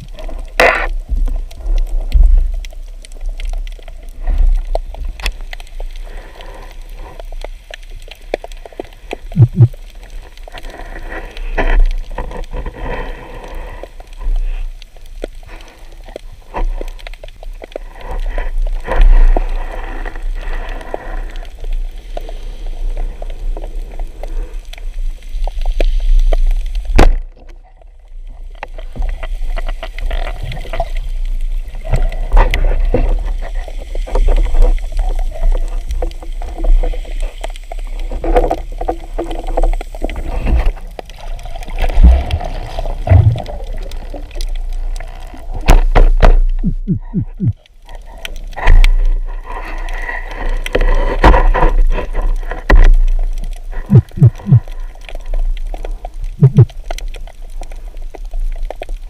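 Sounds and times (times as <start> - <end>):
water gurgling: 0.0 - 59.0
low rumble: 9.4 - 9.7, 41.9 - 43.7, 46.4 - 47.6.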